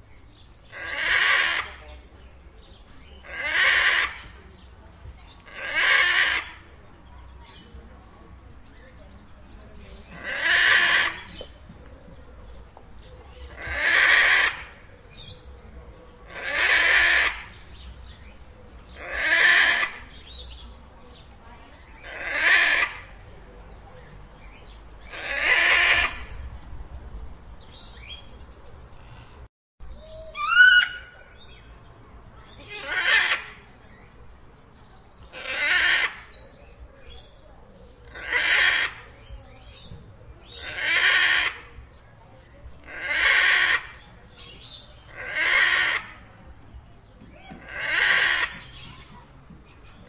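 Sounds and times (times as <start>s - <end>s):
macaw squawking: 30.3s - 31.1s, 38.1s - 39.1s, 40.4s - 41.7s, 42.9s - 46.2s, 47.6s - 49.1s
macaw calling: 30.3s - 31.2s, 47.5s - 49.1s.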